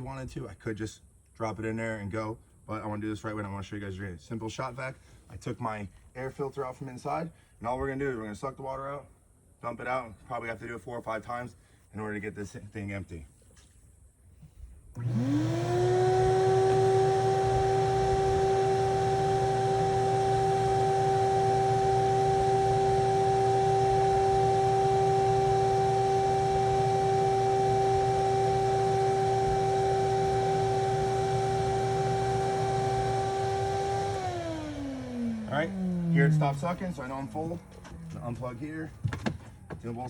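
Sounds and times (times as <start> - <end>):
shop vac whining: 14.4 - 40.0.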